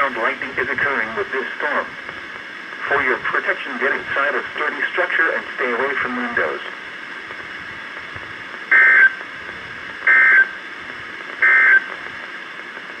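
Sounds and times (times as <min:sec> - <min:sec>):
radio hiss: 0:00.0 - 0:13.0
two-tone data screech: 0:08.7 - 0:09.2, 0:10.1 - 0:10.5, 0:11.4 - 0:11.9.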